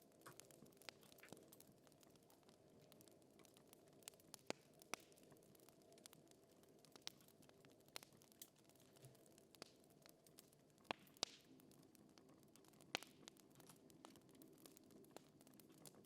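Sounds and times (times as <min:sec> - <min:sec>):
fire crackling: 0:00.0 - 0:16.0
sharp fire pops: 0:10.9 - 0:11.5.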